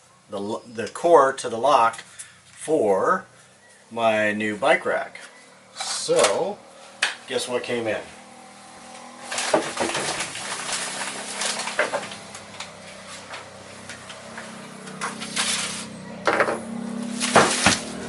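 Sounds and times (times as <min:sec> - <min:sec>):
packaging rustling and crinkling: 0:09.0 - 0:15.9, 0:17.0 - 0:18.0.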